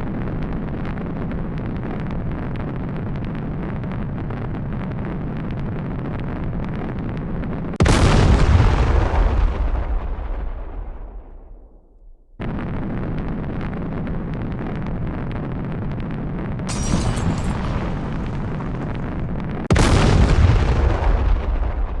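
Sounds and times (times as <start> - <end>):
explosion blasts: 7.8 - 22.0.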